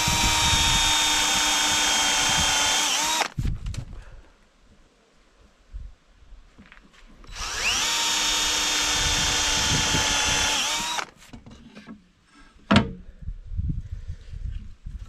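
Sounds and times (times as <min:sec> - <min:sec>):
power drill whining: 0:00.0 - 0:03.4, 0:07.2 - 0:11.1.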